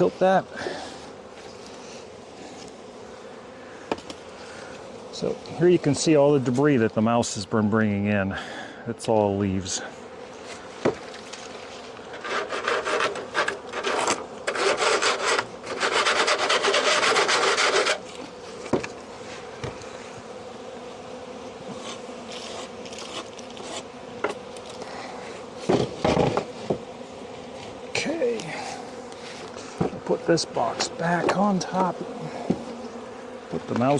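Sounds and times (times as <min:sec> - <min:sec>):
honeybees buzzing: 0:00.0 - 0:33.9
debris scraped from wooden board: 0:10.5 - 0:18.9, 0:21.7 - 0:24.8
knocks on wood: 0:25.7 - 0:26.8.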